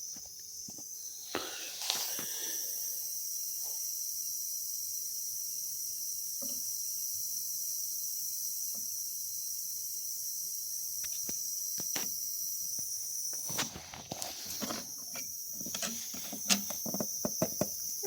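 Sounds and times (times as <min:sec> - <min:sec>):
air cooler whine and hiss: 0:00.0 - 0:18.0
handling rustles and knocks: 0:13.4 - 0:18.0.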